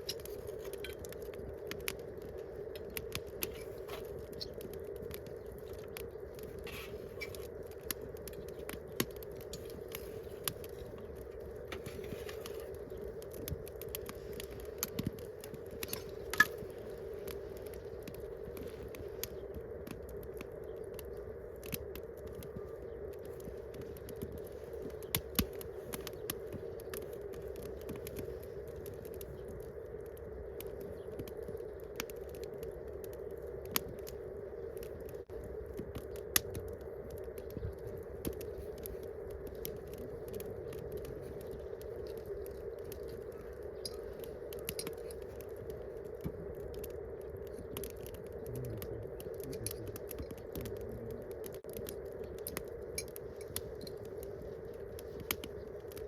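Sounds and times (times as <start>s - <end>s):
campfire crackling and popping: 0.0s - 56.0s.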